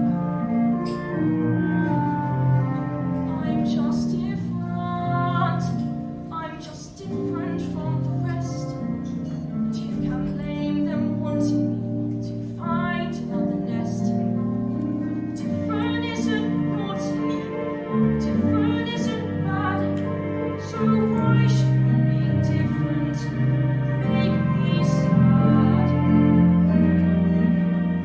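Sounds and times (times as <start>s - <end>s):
instrumental accompaniment: 0.0s - 28.0s.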